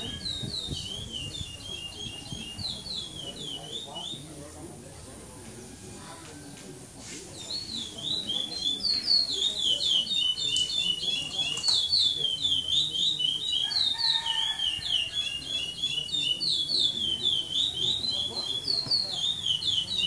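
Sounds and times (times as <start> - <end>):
finch singing whistled notes: 0.0 - 4.3, 7.3 - 20.0.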